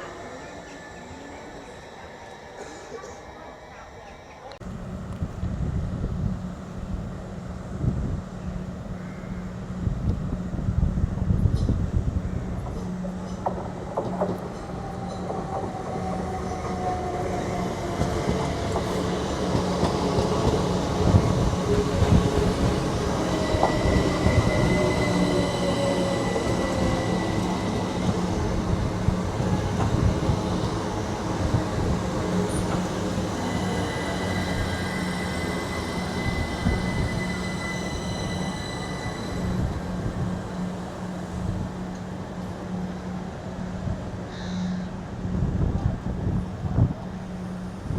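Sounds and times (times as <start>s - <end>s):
train rumbling: 0.0s - 47.9s
wheel squeal on rails: 21.9s - 28.5s, 32.5s - 40.1s.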